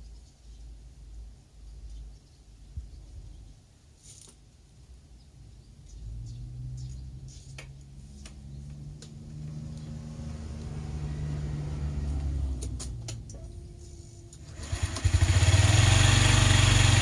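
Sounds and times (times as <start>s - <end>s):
scooter engine idling: 13.6s - 17.0s.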